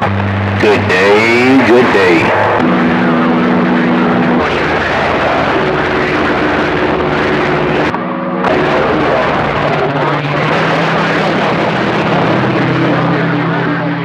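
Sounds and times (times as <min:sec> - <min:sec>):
radio static hiss: 0:00.6 - 0:02.5.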